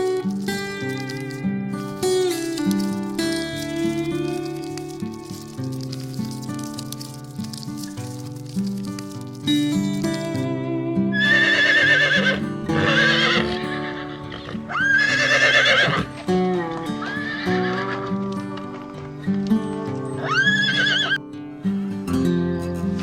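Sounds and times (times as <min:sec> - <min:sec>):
horse whinnying: 0:11.2 - 0:18.5, 0:20.1 - 0:21.2.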